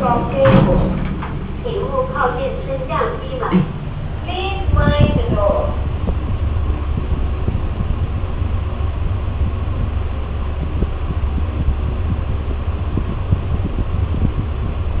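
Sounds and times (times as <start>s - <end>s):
lift low rumble: 0.0s - 15.0s.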